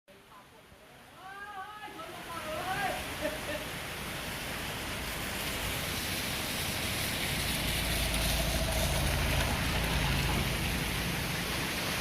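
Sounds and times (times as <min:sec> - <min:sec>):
heavy rain: 0:00.1 - 0:12.0
storm wind buffeting microphone: 0:04.7 - 0:11.8.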